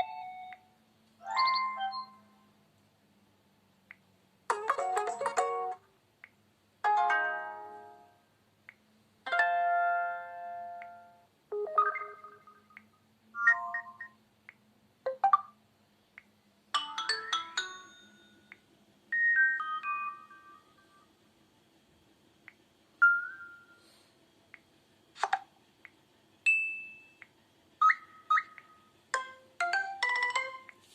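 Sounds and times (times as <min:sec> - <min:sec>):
phone notification tones: 0:11.5 - 0:12.8, 0:13.4 - 0:14.1.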